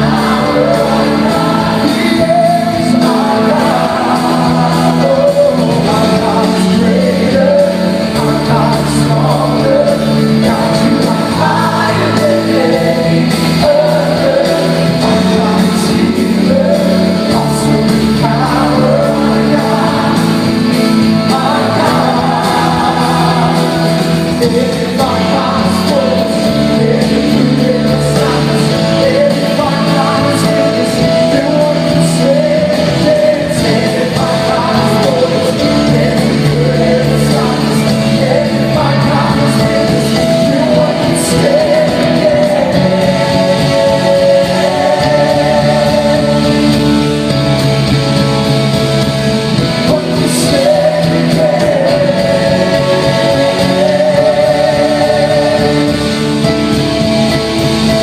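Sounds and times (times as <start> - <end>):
live worship band playing: 0.0 - 58.0
person singing: 0.0 - 58.0.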